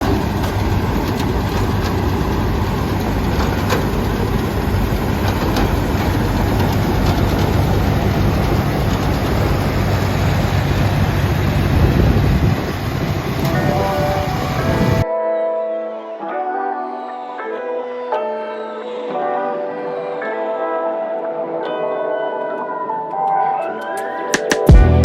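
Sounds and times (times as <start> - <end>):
diesel farm machine engine droning: 0.0 - 15.0.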